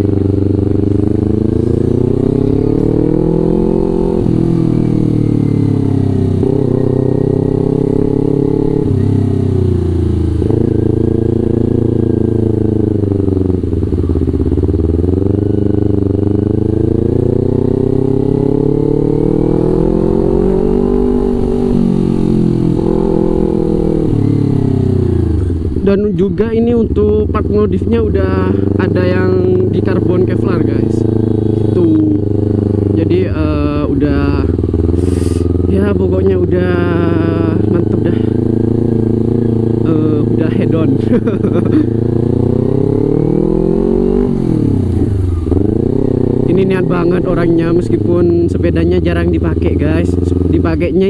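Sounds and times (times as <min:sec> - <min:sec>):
motorcycle engine revving: 0:00.0 - 0:51.0.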